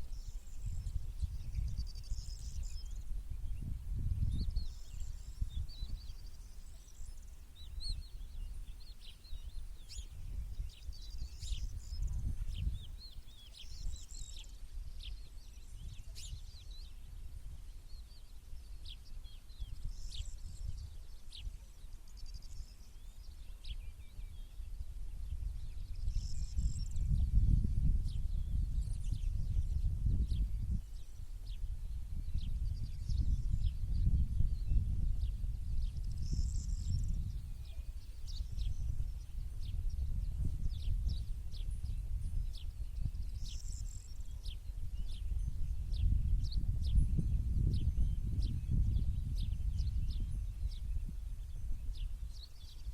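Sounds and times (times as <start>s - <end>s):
small birds chirping: 0.0s - 52.9s.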